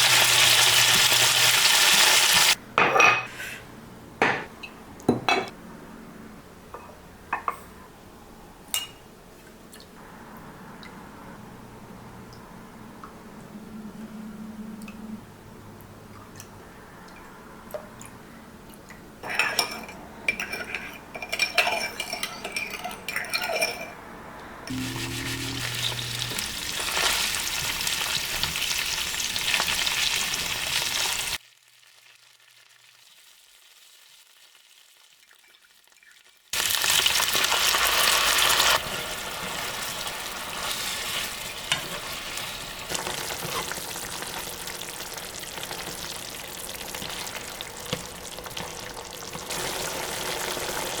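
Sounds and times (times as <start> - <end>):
pork sizzling in a pan: 0.0 - 2.6, 24.7 - 51.0
utensils clinking on cookware: 1.8 - 3.6, 4.2 - 5.5, 19.2 - 24.0.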